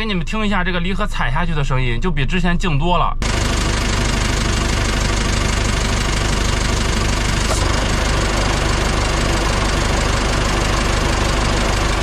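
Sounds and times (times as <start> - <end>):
truck engine idling: 3.2 - 12.0.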